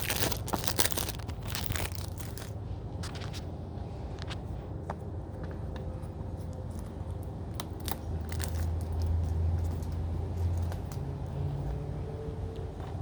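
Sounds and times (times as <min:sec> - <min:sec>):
plastic wrapping crinkling: 0:00.0 - 0:03.5, 0:07.5 - 0:11.0.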